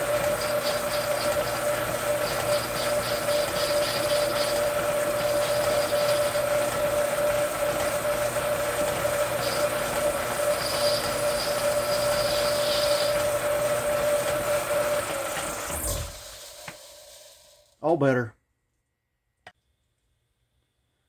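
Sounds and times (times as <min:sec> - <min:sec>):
lathe machine hum: 0:00.0 - 0:17.7
tool squealing on metal: 0:00.3 - 0:06.7, 0:09.2 - 0:13.8.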